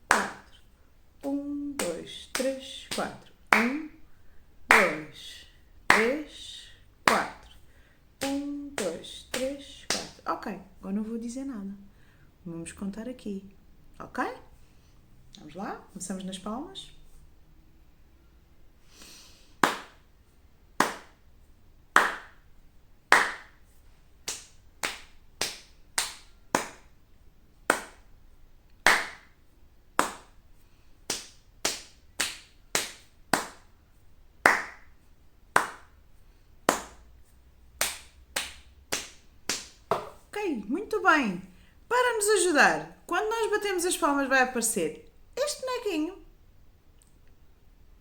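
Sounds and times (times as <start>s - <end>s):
hand claps: 0.1s - 0.6s, 1.2s - 3.9s, 4.7s - 5.2s, 5.9s - 6.3s, 7.0s - 7.6s, 8.2s - 10.2s, 19.6s - 20.1s, 20.8s - 21.2s, 22.0s - 22.4s, 23.1s - 27.0s, 27.7s - 28.1s, 28.8s - 29.4s, 30.0s - 30.4s, 31.1s - 33.8s, 34.4s - 36.0s, 36.7s - 37.1s, 37.8s - 40.3s
slaps on crossed arms: 0.1s - 0.6s, 1.8s - 3.9s, 4.7s - 5.1s, 5.9s - 6.3s, 7.0s - 7.6s, 8.2s - 10.2s, 19.6s - 20.1s, 20.8s - 21.2s, 22.0s - 22.4s, 23.1s - 27.0s, 27.7s - 28.1s, 28.8s - 30.4s, 31.0s - 33.8s, 34.4s - 36.0s, 36.7s - 37.1s, 37.8s - 40.3s.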